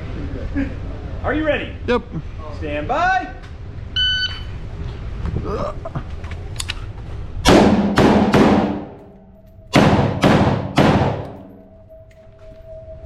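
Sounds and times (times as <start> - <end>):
rifle shots with echo: 7.5 - 9.0, 9.7 - 11.6.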